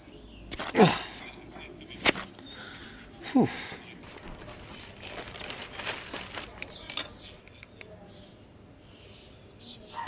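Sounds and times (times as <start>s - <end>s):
plastic or paper crinkling: 4.0s - 7.4s.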